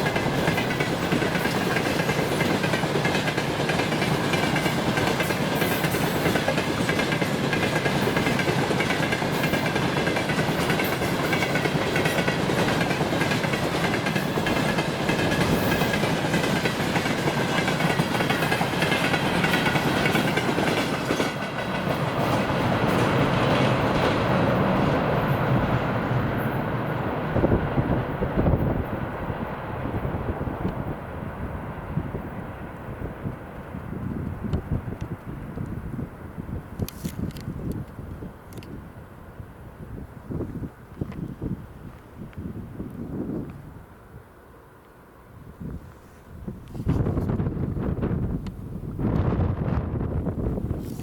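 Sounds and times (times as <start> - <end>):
train wheels clickety-clack: 0.0 - 28.8.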